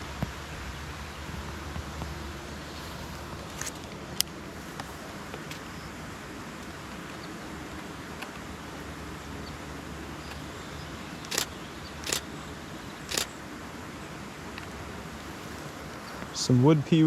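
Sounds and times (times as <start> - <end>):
steady outdoor hiss: 0.0 - 17.0
camera shutter clicks: 11.2 - 12.3, 13.1 - 13.3.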